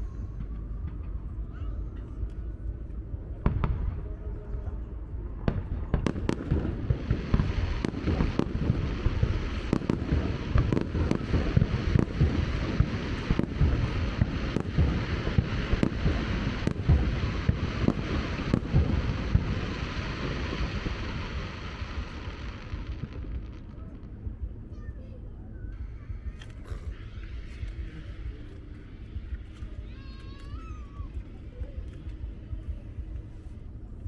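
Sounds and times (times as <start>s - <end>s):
fireworks booming: 3.1s - 24.2s
fireworks sizzling crackle: 5.6s - 25.1s, 25.8s - 33.8s.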